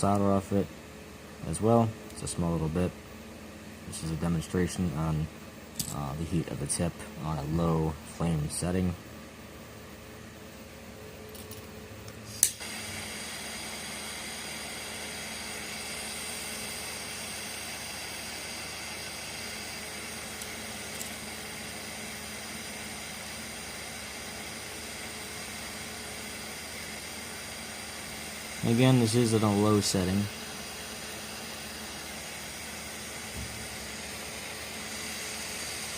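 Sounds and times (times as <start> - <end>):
torch igniter click: 12.3 - 12.8
torch flame hissing: 12.3 - 35.9.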